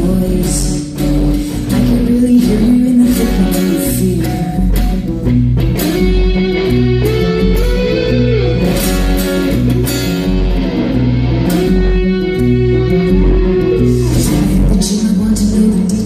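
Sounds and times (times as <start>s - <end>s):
electric guitar sliding notes: 0.0s - 16.0s
repeating bass figure: 4.0s - 16.0s.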